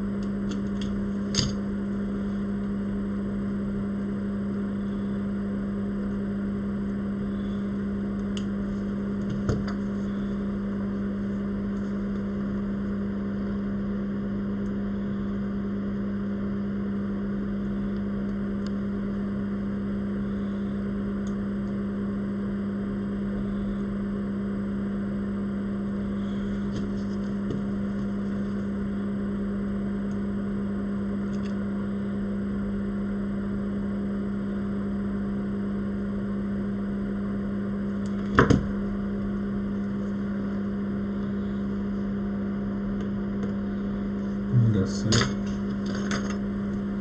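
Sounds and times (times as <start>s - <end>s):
small motor humming: 4.6s - 12.2s.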